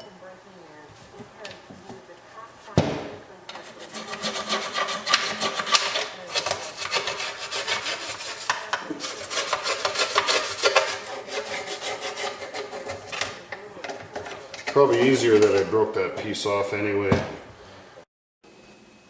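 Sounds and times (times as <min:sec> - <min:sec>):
brush scrubbing plastic: 0:03.5 - 0:17.0.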